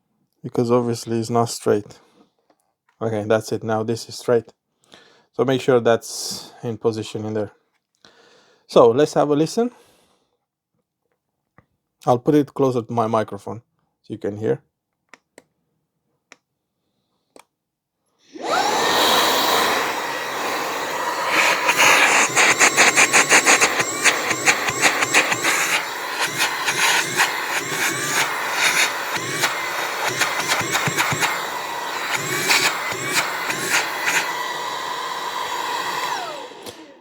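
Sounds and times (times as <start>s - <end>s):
handheld vacuum running: 18.3s - 37.0s.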